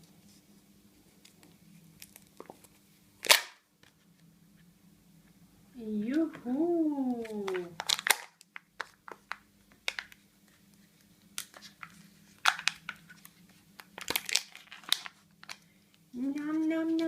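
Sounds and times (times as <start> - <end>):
foil and plastic crinkling: 7.4 - 10.2, 11.4 - 15.7.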